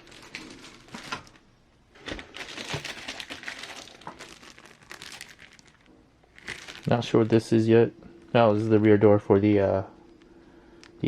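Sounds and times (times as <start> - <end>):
plastic packaging crinkling: 0.0 - 7.4.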